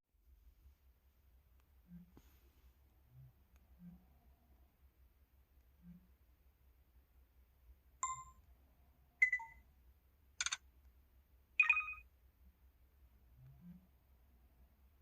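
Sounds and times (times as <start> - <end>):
phone keypad beeps: 8.0 - 8.4, 9.2 - 9.6, 11.6 - 12.0.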